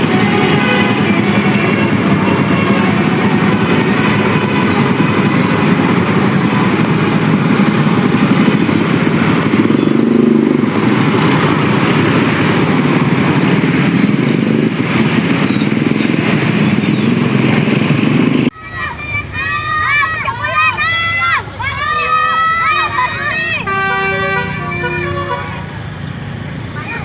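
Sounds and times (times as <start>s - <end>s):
engine note rising and falling: 0.0s - 18.6s
road traffic passing close: 0.0s - 27.0s.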